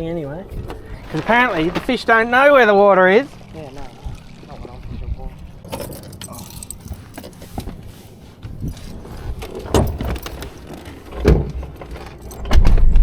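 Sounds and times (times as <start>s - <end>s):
car door and gear clicks and rattles: 9.4s - 13.0s.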